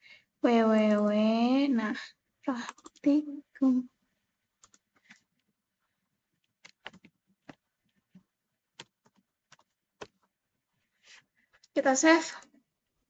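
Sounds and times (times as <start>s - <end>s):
mouse and keyboard clicks: 6.6s - 8.2s.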